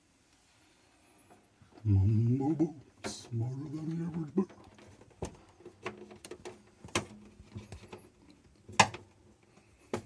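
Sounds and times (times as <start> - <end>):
small clicks and knocks: 4.5 - 10.0.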